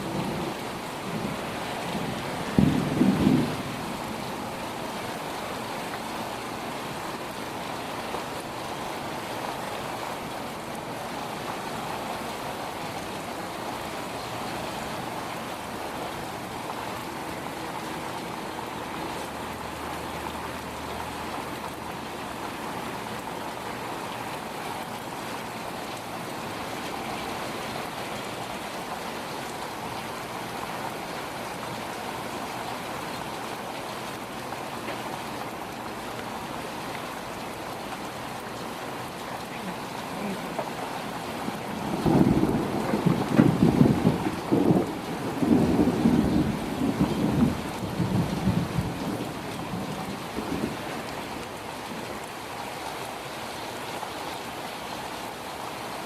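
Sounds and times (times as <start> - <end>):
faint thunder rumble: 0.0 - 5.0, 41.2 - 52.1
heavy rain: 0.0 - 56.0.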